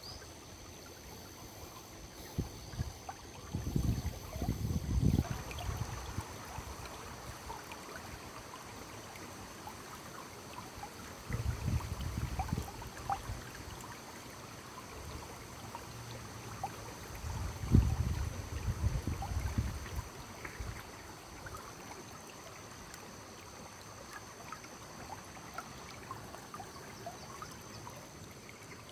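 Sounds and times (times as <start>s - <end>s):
stream flowing and trickling: 0.0s - 28.9s
water plinks: 2.1s - 14.0s.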